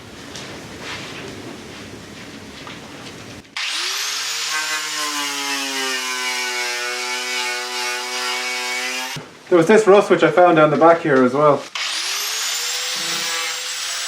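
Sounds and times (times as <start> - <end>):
power tool motor whine: 3.6 - 9.2, 11.7 - 14.0.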